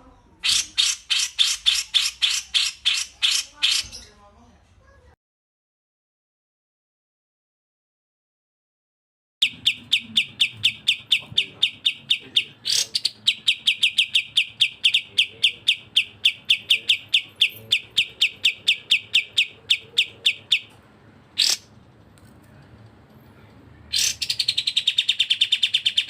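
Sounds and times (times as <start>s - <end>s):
bird song rapid whistled notes: 9.4s - 20.7s, 23.9s - 26.0s
loud bird call: 9.4s - 20.8s, 21.4s - 21.7s, 23.9s - 26.0s.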